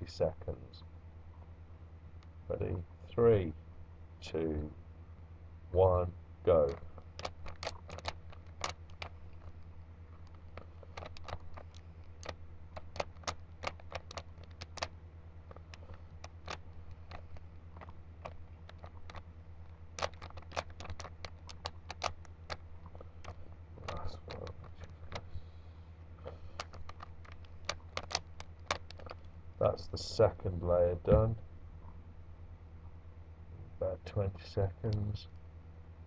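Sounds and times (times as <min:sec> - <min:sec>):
steady low hum: 0:00.0 - 0:36.0
plastic puzzle cube clicking: 0:06.7 - 0:09.5, 0:10.3 - 0:14.9, 0:15.5 - 0:19.2, 0:20.0 - 0:22.6, 0:26.6 - 0:29.2.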